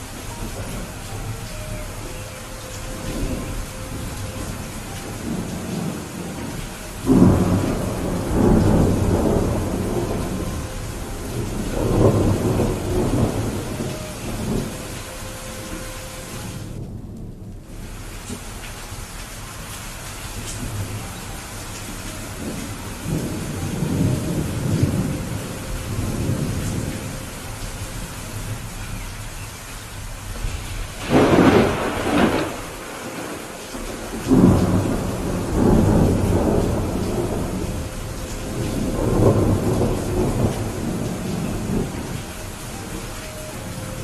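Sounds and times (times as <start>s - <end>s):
rolling thunder rumbles: 0.0s - 44.0s
steady rain: 0.0s - 44.0s
sharp thunderclap: 7.0s - 13.8s, 30.4s - 42.0s.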